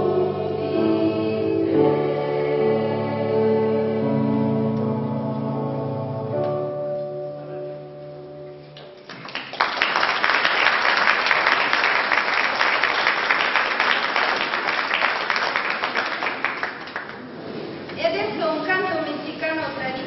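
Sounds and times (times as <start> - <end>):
choir holding a chord: 0.0 - 8.6
audience applause: 9.0 - 17.3.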